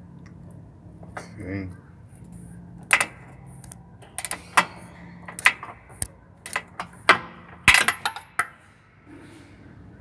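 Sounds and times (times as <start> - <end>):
wrench clinking against bolt: 2.8 - 8.6.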